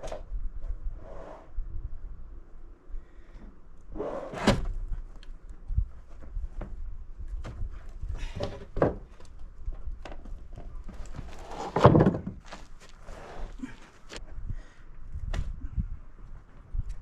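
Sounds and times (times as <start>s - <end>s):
wooden boards scraping: 10.2s - 13.5s
wooden boards knocking: 11.7s - 12.4s.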